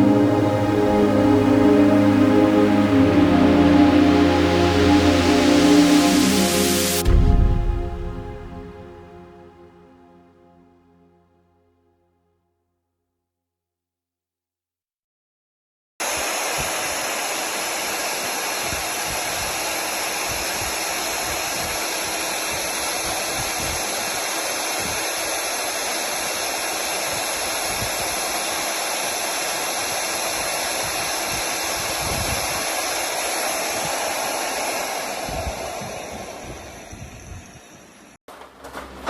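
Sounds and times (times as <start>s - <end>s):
core drill motor whirring: 16.0s - 37.9s.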